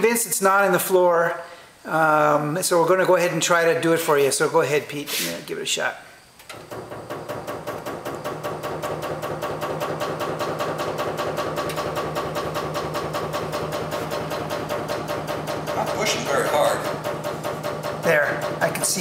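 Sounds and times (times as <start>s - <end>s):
bandsaw running: 6.8s - 19.0s.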